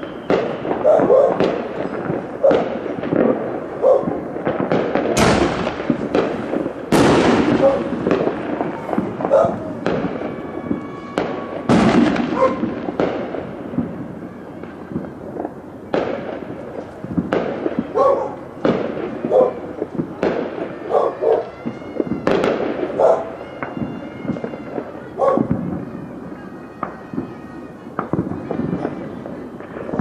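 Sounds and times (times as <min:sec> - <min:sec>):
firecrackers banging: 0:00.0 - 0:30.0
dog barking: 0:00.8 - 0:01.4, 0:03.8 - 0:04.1, 0:09.3 - 0:09.6, 0:12.3 - 0:12.6, 0:18.0 - 0:18.4, 0:19.3 - 0:19.6, 0:20.9 - 0:21.4, 0:23.0 - 0:23.3, 0:25.2 - 0:25.5.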